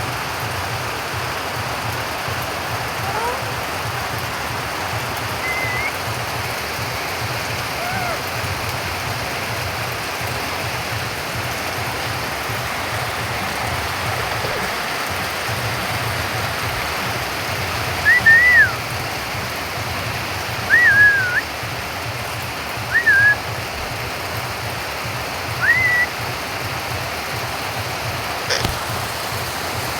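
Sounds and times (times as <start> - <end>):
steady rain falling: 0.0 - 29.9
bird whistled calls: 5.3 - 8.6, 17.8 - 19.0, 20.6 - 21.5, 22.8 - 23.5, 25.6 - 26.2.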